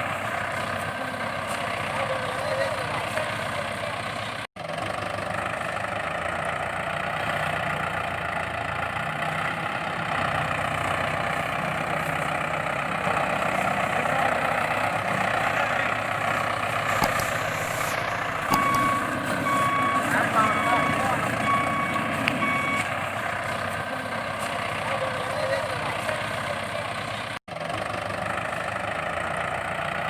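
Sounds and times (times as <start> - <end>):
vehicle engine running: 0.0 - 30.0
reversing beeps: 18.4 - 22.9.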